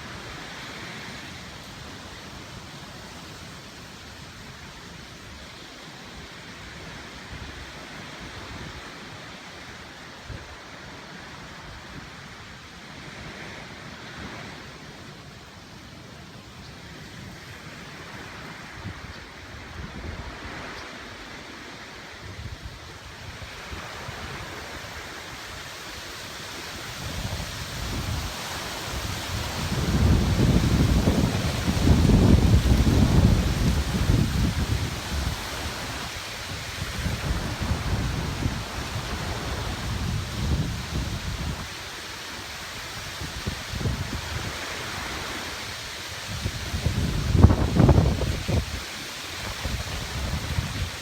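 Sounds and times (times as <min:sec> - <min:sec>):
surf washing onto beach: 0:00.0 - 0:51.0
wind buffeting microphone: 0:26.8 - 0:41.8, 0:42.9 - 0:45.4, 0:46.2 - 0:51.0.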